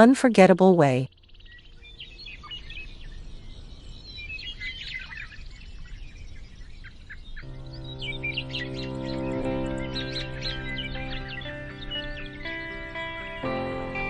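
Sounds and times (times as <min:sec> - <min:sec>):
small birds chirping: 0:01.1 - 0:14.0
soft outdoor hiss: 0:01.1 - 0:14.0
soft music chord: 0:07.4 - 0:14.0.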